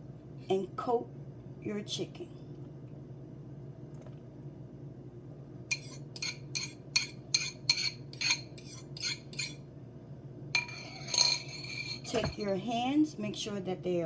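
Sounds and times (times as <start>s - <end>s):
utensil clinking against bowl: 5.7s - 9.6s, 10.6s - 12.6s.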